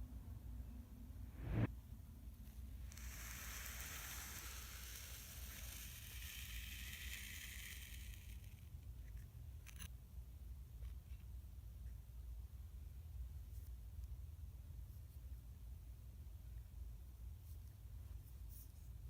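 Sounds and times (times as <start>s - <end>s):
sand crumbling hiss: 2.7s - 8.6s.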